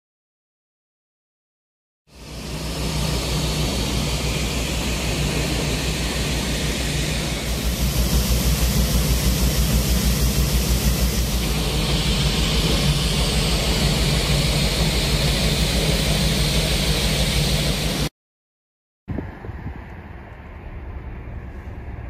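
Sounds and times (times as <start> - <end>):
aircraft engines running: 2.1 - 18.1.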